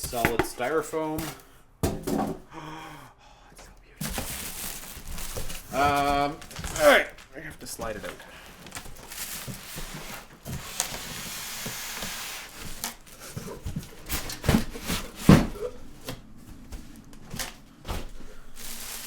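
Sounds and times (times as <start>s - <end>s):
knocks and thumps: 0.0s - 0.7s.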